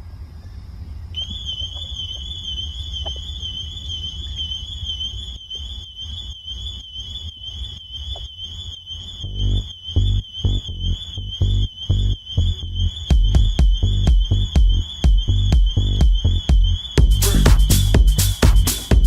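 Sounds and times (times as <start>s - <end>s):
car alarm warbling tone: 1.2s - 17.0s
low rumble: 9.2s - 19.0s
electronic dance kick drum: 12.8s - 19.0s.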